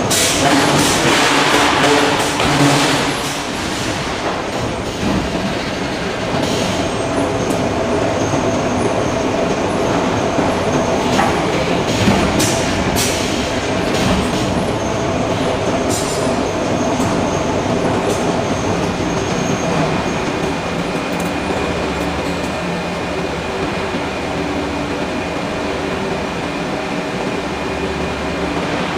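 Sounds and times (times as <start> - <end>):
machinery mechanical din: 0.0 - 7.0.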